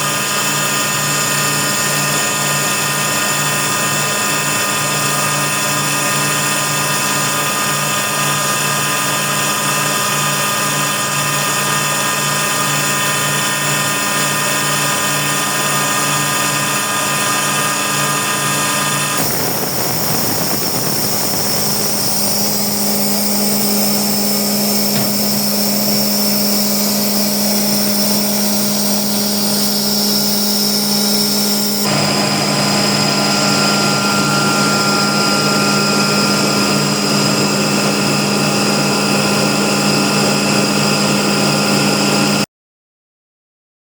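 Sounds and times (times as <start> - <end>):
air compressor whining: 0.0 - 42.4
high hiss: 19.2 - 31.9.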